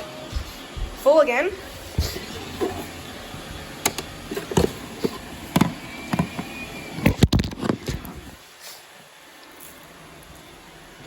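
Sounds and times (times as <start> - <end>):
steady low hum: 0.0 - 8.4
plastic knocks and clicks: 3.8 - 8.0.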